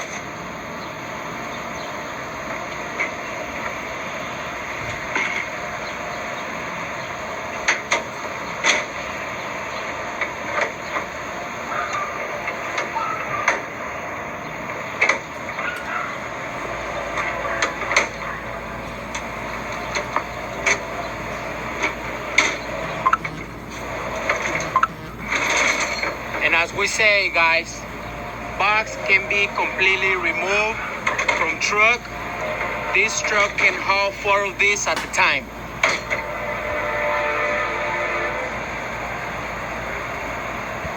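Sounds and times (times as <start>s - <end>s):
background hiss: 13.6s - 40.9s.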